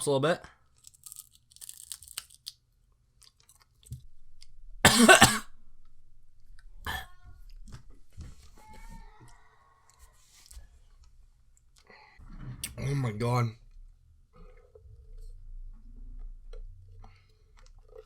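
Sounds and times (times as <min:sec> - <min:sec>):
man coughing: 0:04.9 - 0:05.4.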